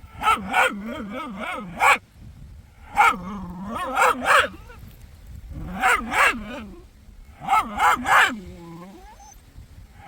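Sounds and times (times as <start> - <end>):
puppy barking and yipping: 0.2 - 2.0, 3.0 - 4.8, 5.8 - 6.6, 7.4 - 8.4.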